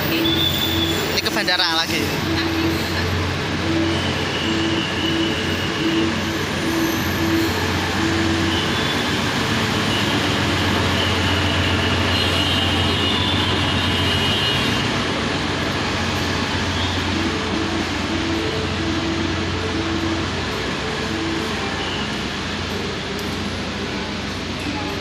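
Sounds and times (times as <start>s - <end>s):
short beeping tone: 0.0s - 11.9s, 15.9s - 23.0s
diesel train engine humming: 0.0s - 25.0s.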